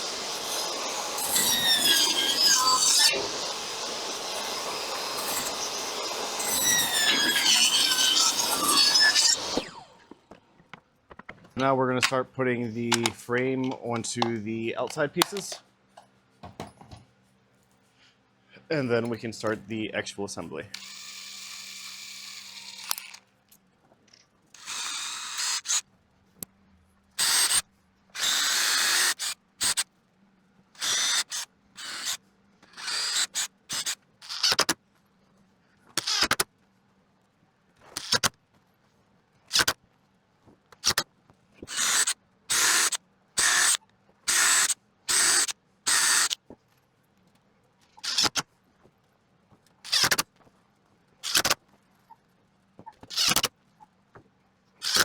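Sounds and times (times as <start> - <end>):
power drill driving screws: 0.0 - 10.2, 20.8 - 23.2, 24.6 - 25.8, 27.2 - 27.6, 28.2 - 29.8, 30.8 - 34.8, 36.0 - 36.4, 38.0 - 38.3, 39.5 - 39.8, 40.8 - 41.0, 41.6 - 46.4, 48.0 - 48.4, 49.8 - 50.2, 51.2 - 51.6, 53.0 - 53.5.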